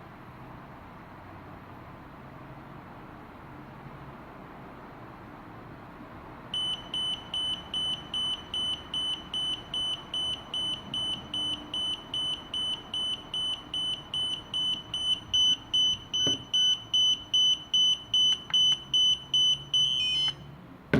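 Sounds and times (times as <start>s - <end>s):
remote controller beeping: 6.6s - 20.5s.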